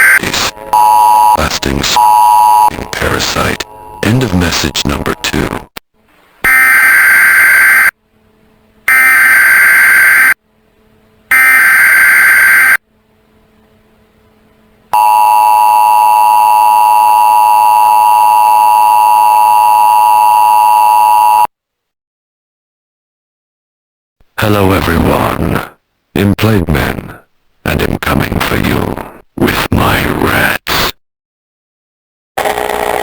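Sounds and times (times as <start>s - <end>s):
long steady lower beep: 0.0s - 5.3s, 8.9s - 10.4s, 11.3s - 12.8s, 14.9s - 21.5s
harsh electronic beeps: 0.0s - 5.6s.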